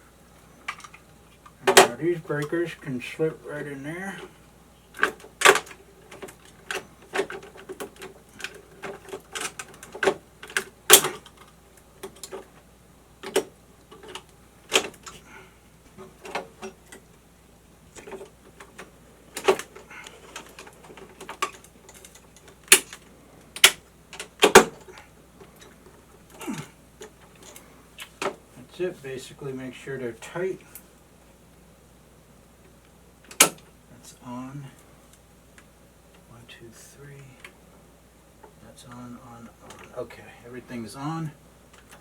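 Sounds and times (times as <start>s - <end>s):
circuit breakers clicking into panel: 5.0s - 12.5s, 13.2s - 15.2s, 18.0s - 25.0s, 33.2s - 33.7s.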